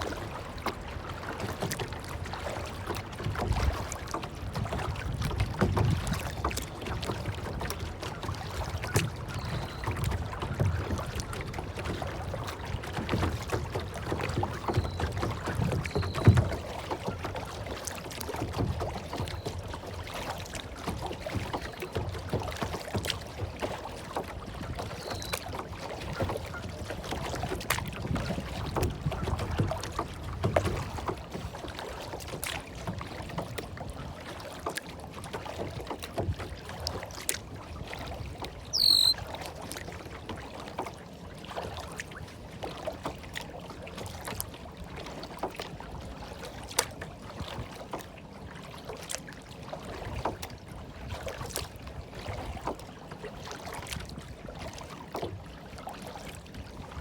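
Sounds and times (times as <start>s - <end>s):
water lapping and splashing: 0.0s - 57.0s
small clicks and drips: 1.4s - 42.0s, 46.6s - 49.3s, 50.1s - 51.7s
brief high chirp: 38.8s - 39.2s.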